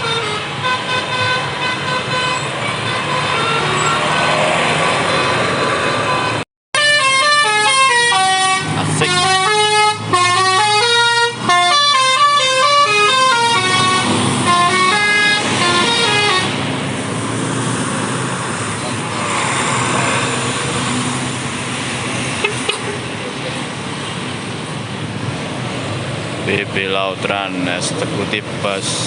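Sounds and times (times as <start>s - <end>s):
multi-tone bus horn melody: 0.0s - 16.7s, 22.3s - 23.0s.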